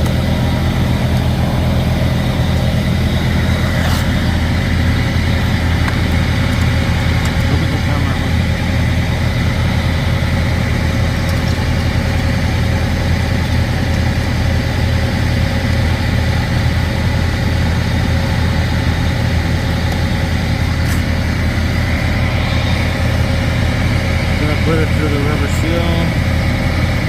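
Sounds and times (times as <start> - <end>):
heavy truck engine idling: 0.0 - 27.0.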